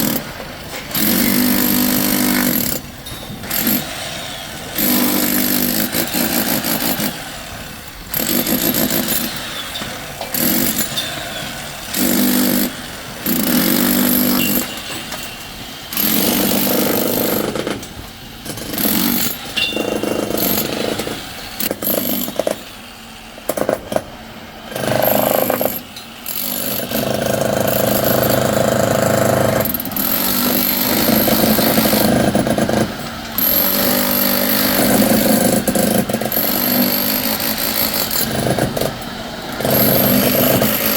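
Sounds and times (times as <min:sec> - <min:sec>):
power tools running: 0:24.7 - 0:40.9.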